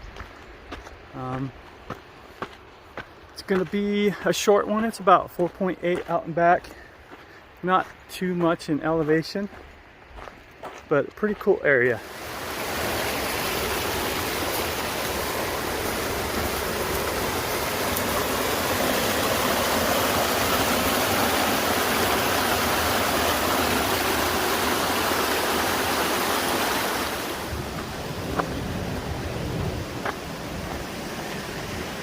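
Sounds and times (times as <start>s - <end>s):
water rushing over rocks: 11.5s - 32.0s.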